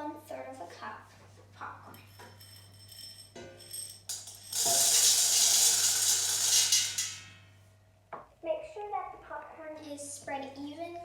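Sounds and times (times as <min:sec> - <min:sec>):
popcorn kernels poured into pot: 0:04.1 - 0:07.0.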